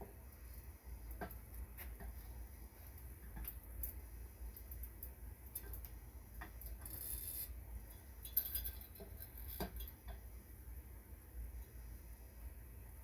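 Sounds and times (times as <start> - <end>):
ceiling fan parts clicking: 0.0 - 10.4.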